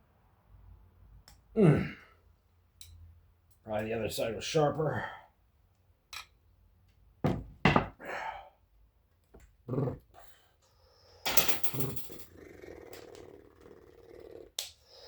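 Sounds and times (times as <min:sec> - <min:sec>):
hand tools knocking on wood: 0:07.2 - 0:08.0.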